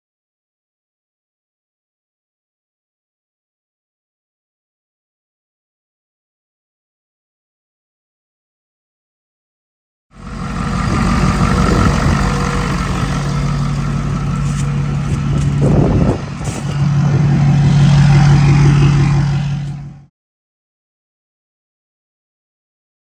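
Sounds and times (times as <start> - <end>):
diesel truck engine running: 10.2 - 20.1.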